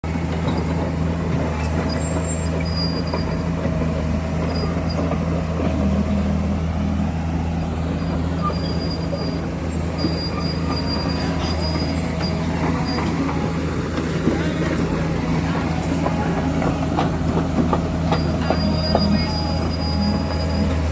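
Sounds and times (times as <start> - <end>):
excavator diesel engine running: 0.0 - 20.9
short high-pitched squeals: 7.9 - 13.6, 18.0 - 20.9.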